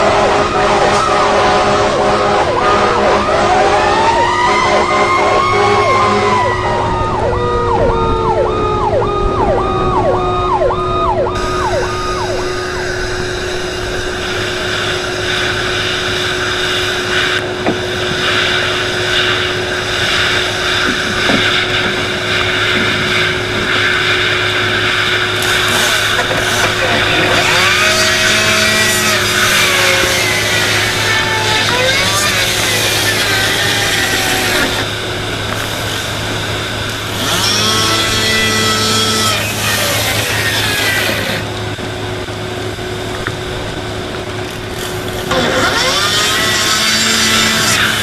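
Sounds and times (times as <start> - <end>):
yelping siren: 0.0 - 15.0
wailing siren: 0.0 - 44.2, 45.2 - 48.0
loud steady rushing noise: 0.0 - 48.0
steady low drone: 0.0 - 48.0.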